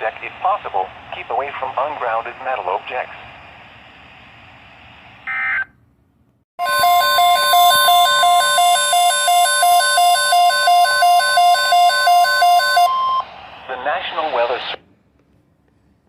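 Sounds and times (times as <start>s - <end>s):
data tone bursts: 6.6s - 13.2s
steady alert tone: 6.6s - 13.2s
rapid pulsing electronic beep: 6.8s - 13.2s.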